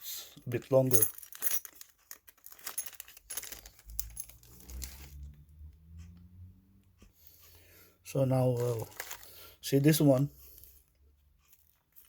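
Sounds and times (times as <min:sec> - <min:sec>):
crinkling: 0:00.5 - 0:05.2, 0:08.5 - 0:09.6
coins clicking and clinking: 0:00.7 - 0:05.2.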